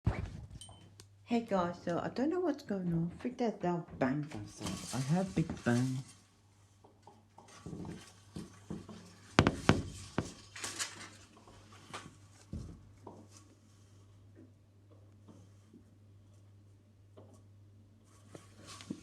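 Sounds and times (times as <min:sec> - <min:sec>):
fireworks cracks and bangs: 0:09.4 - 0:10.4.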